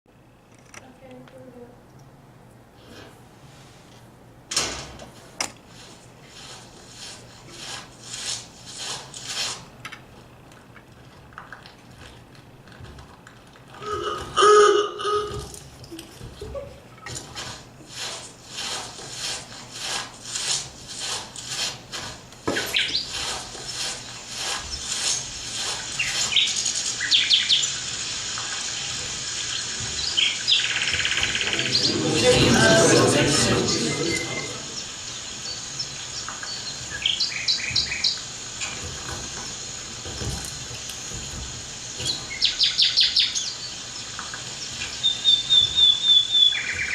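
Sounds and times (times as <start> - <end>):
birds chirping: 29.5 - 38.2.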